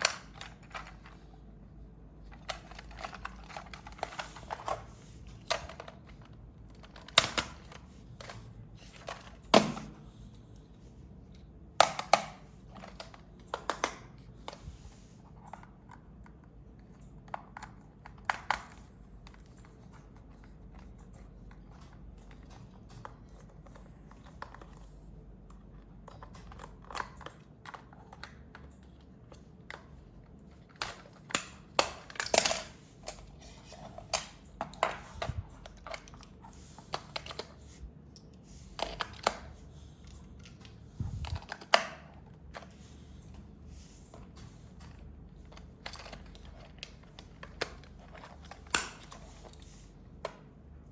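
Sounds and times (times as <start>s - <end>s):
plastic toy parts clicking: 2.3s - 4.8s.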